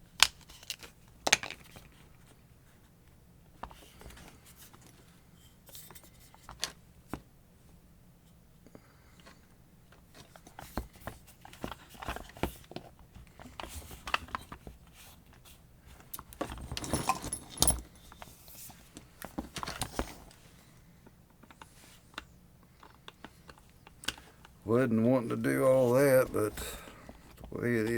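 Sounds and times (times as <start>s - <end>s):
metal and plastic parts rattling: 0.2s - 2.0s, 15.9s - 20.4s.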